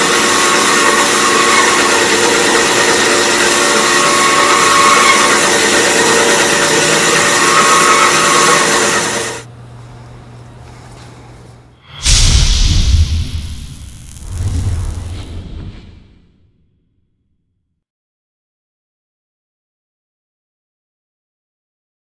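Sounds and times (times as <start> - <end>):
low hum: 11.9 - 16.6.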